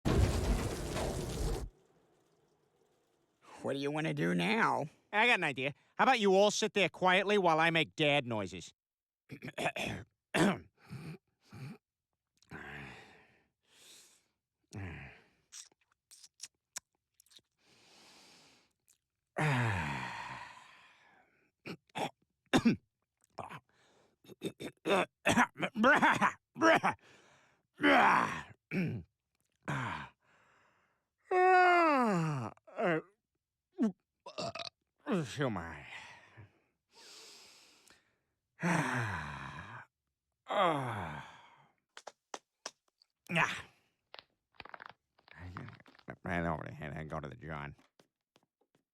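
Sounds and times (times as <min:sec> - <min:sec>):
man sighing and groaning: 0:14.7 - 0:15.3, 0:19.4 - 0:20.8, 0:27.8 - 0:30.2, 0:31.2 - 0:33.2, 0:33.8 - 0:34.4, 0:38.6 - 0:39.9, 0:40.5 - 0:41.6, 0:43.3 - 0:43.8
mouth clicks and lip smacks: 0:15.5 - 0:17.6, 0:42.0 - 0:42.8, 0:44.2 - 0:46.1
man sighing: 0:40.5 - 0:41.5.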